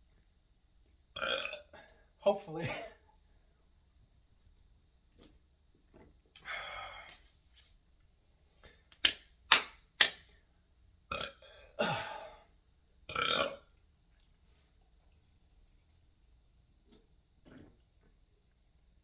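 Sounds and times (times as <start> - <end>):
man burping: 1.2 - 1.9, 2.6 - 3.0, 11.1 - 12.5, 13.1 - 13.7
sharp loud clicks: 9.0 - 10.3.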